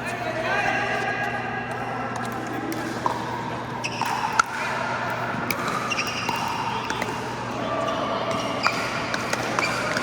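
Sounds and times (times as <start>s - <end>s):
court background noise: 0.0s - 10.0s
ball bouncing on court: 1.6s - 7.3s, 8.2s - 10.0s
paddles hitting plastic ball: 1.7s - 7.3s, 8.3s - 10.0s.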